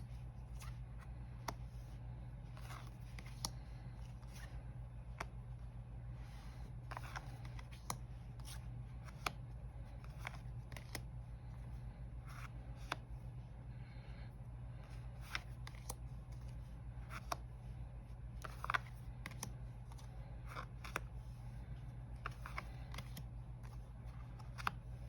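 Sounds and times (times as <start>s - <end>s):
cards sliding: 0.0s - 13.1s, 14.8s - 25.0s
steady low hum: 0.0s - 25.0s
cards clicking: 2.5s - 5.4s, 6.5s - 11.2s, 15.2s - 17.5s, 18.3s - 21.1s, 22.1s - 25.0s.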